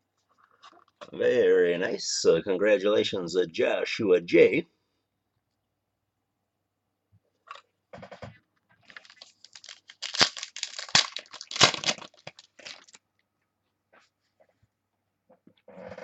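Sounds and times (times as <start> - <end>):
plastic wrappers crinkling: 8.8 - 13.0.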